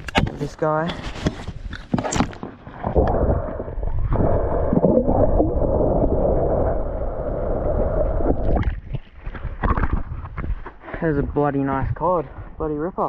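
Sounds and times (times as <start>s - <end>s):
muffled underwater gurgling: 2.8s - 9.0s.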